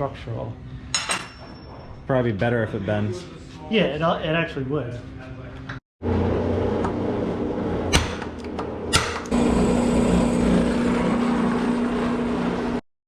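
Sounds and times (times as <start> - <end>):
machine motor humming: 6.0 - 12.8.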